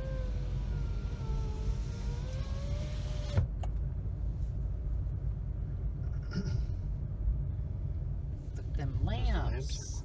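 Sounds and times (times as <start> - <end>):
power window motor whining: 0.0 - 3.5
car rolling rumble: 0.0 - 10.0.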